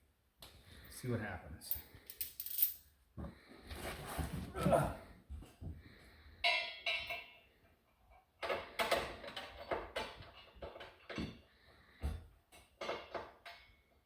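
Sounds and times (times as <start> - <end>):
metal bolts clinking: 1.7 - 2.8.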